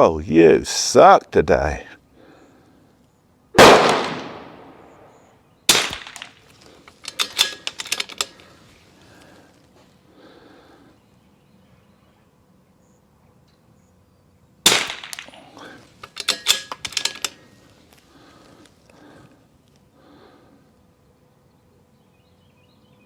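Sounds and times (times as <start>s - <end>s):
rifle shot: 3.6s - 8.3s, 14.7s - 17.4s
rifle bolt clacking and clicking: 5.7s - 8.5s, 14.7s - 17.4s.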